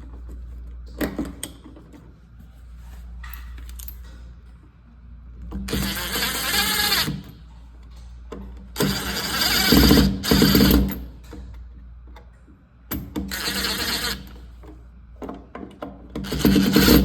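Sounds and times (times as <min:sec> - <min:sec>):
cordless drill driving screws: 0:05.7 - 0:07.2, 0:08.8 - 0:10.8, 0:13.3 - 0:14.3.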